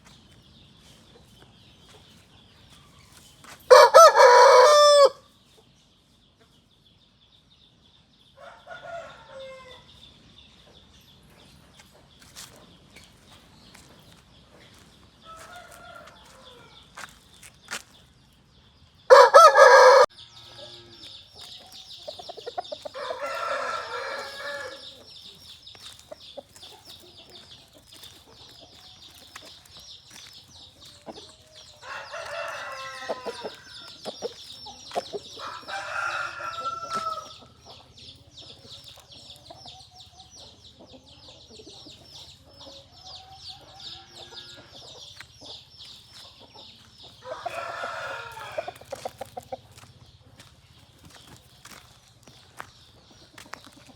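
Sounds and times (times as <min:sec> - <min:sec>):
rooster crowing: 0:03.7 - 0:05.2, 0:08.4 - 0:09.8, 0:19.1 - 0:20.9, 0:23.0 - 0:24.9, 0:31.8 - 0:33.8, 0:35.4 - 0:37.4, 0:47.2 - 0:48.8
chickens clucking: 0:10.6 - 0:18.0, 0:19.1 - 0:53.9.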